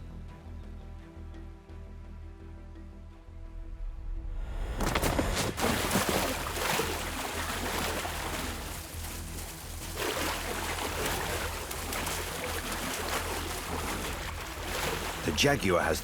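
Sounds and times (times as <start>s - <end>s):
churning thrashing water: 4.8s - 16.0s
water splashing hard: 4.8s - 16.0s.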